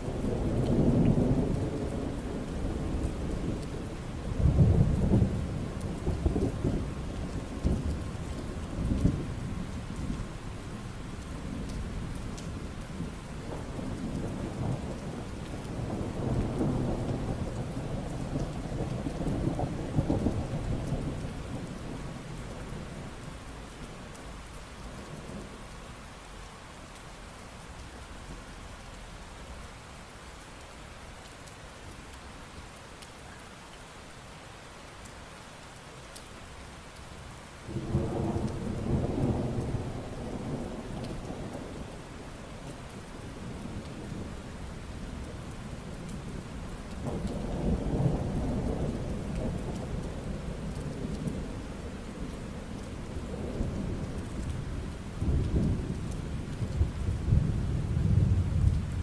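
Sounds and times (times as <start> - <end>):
steady rain falling: 0.0 - 59.0
rolling thunder: 37.7 - 59.0.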